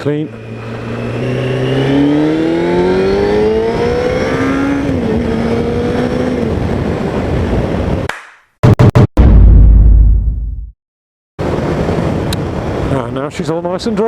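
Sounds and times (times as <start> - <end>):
motorcycle engine accelerating: 0.3 - 7.3
wind rush: 3.0 - 8.1.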